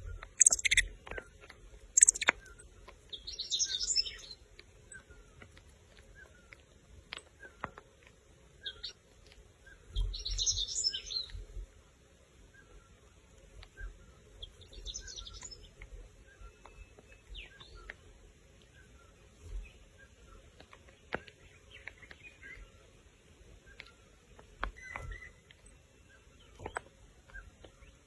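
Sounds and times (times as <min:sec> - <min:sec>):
small birds chirping: 0:00.0 - 0:28.0
sharp clicks: 0:00.3 - 0:00.9, 0:02.0 - 0:02.4.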